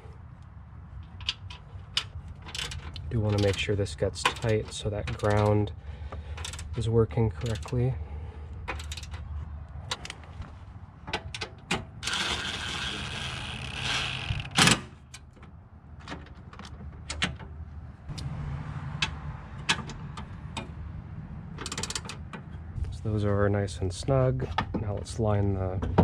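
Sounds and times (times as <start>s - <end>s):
continuous ratchet rattling: 0.9s - 9.3s, 11.2s - 15.4s, 21.5s - 22.6s
hand tools clicking on bolts: 1.0s - 7.8s, 8.7s - 9.2s, 21.6s - 22.5s.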